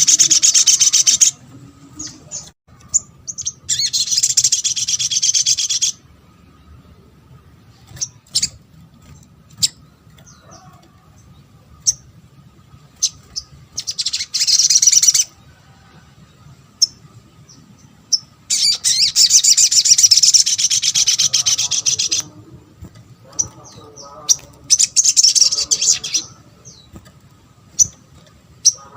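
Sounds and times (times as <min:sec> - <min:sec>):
rattling bird trill: 0:00.0 - 0:01.4, 0:07.7 - 0:12.2, 0:12.8 - 0:15.4, 0:18.1 - 0:28.9
sharp high bird chirps: 0:00.0 - 0:01.4, 0:02.0 - 0:06.1, 0:11.7 - 0:15.4, 0:16.7 - 0:22.3, 0:23.2 - 0:28.9.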